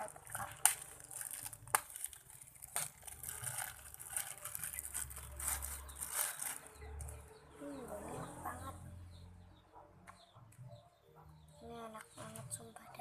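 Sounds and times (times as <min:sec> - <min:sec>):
packaging rustling and scraping: 0:00.0 - 0:07.2.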